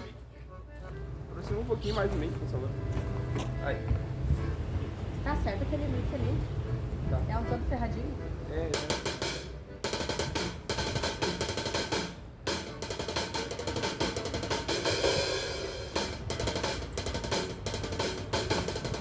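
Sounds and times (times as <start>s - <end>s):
hi-hat: 8.7s - 19.0s
bass drum: 8.8s - 19.0s
cymbals ringing: 8.8s - 19.0s
snare drum: 8.8s - 19.0s.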